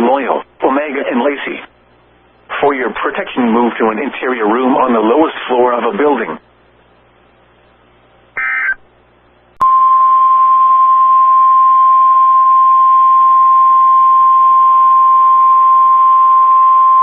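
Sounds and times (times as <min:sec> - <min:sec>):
radio hiss: 0:00.0 - 0:07.4
loud steady warning alarm tone: 0:08.4 - 0:08.8
warbling digital data tones: 0:08.4 - 0:08.8.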